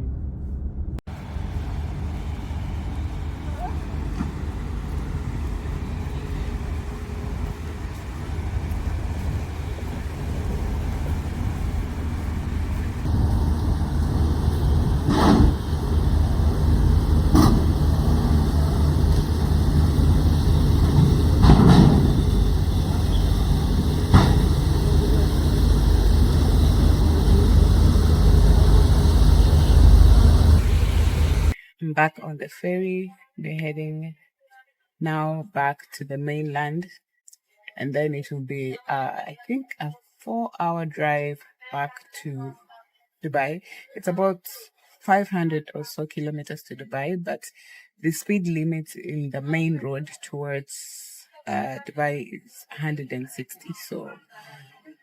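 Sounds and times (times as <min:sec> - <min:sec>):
vehicle engine rumble: 0:00.0 - 0:31.6.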